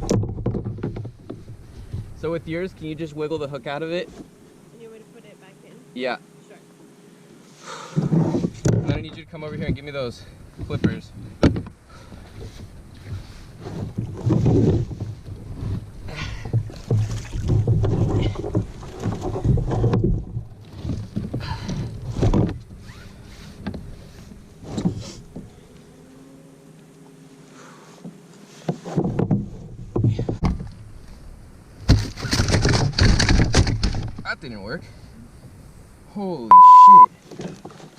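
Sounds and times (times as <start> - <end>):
knocks and bumps on kayak: 0.0 - 2.2, 7.9 - 10.0, 10.6 - 22.8, 28.0 - 30.8, 31.8 - 34.3
water against hull: 0.0 - 4.4, 7.8 - 34.3, 36.5 - 37.9.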